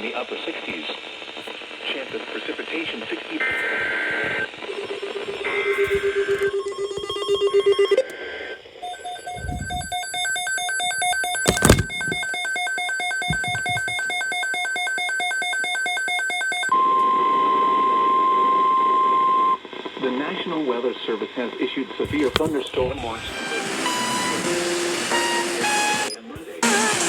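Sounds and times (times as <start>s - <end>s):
steady warning alarm tone: 8.8s - 16.7s.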